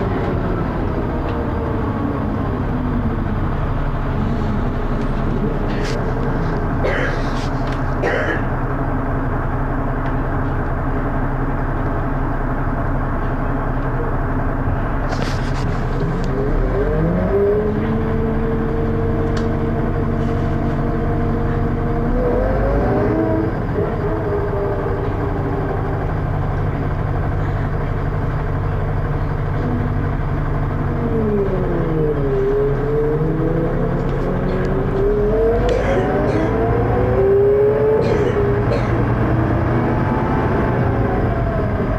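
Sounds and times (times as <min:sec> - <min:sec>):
bus engine running: 0:00.0 - 0:41.9.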